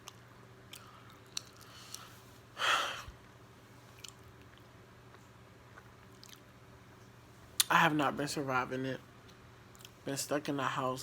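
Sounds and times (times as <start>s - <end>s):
person chewing close to microphone: 0.0s - 2.1s, 3.9s - 6.5s
wet mouth clicks: 4.0s - 4.7s.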